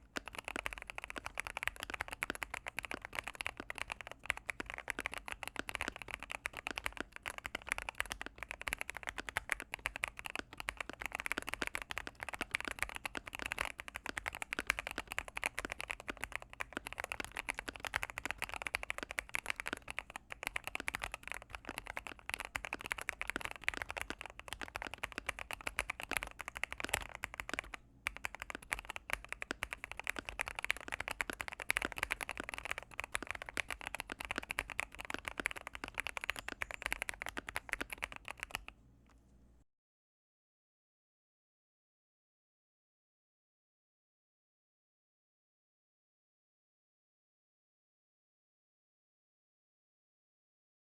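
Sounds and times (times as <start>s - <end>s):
typing on mechanical keyboard: 0.0s - 38.8s.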